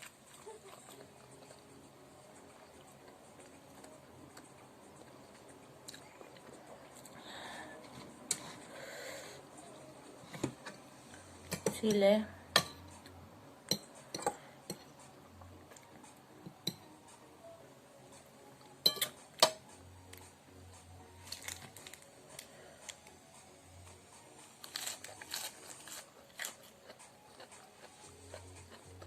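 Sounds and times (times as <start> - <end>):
utensils and dishes clinking: 13.7 - 15.0, 16.5 - 17.0, 18.8 - 19.7.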